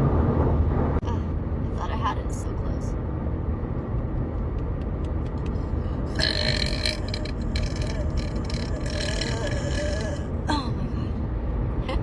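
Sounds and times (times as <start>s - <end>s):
woman burping: 6.1s - 10.9s.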